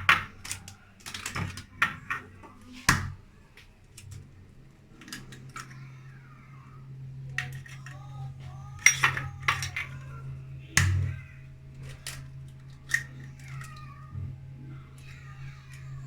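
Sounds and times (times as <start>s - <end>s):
shells and dishes clinking: 8.8s - 10.0s.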